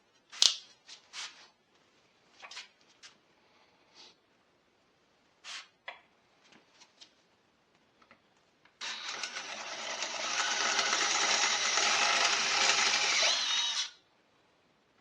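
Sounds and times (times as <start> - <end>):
electric drill boring into metal: 8.8 - 14.0.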